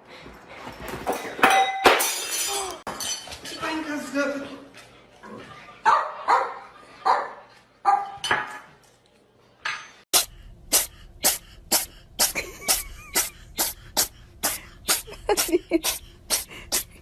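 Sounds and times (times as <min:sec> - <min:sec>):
dog barking: 0:05.8 - 0:08.2.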